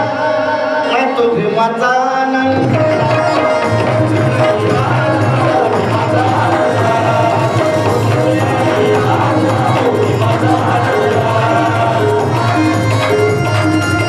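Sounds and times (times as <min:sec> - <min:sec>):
drums steady beat: 0:02.6 - 0:14.0
melodic instrument held notes: 0:03.0 - 0:14.0.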